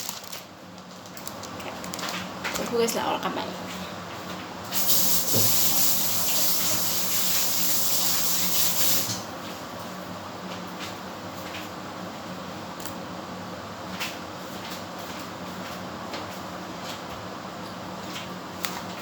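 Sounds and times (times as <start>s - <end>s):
tap water running: 4.6s - 9.3s
hands washing under tap: 4.7s - 9.2s.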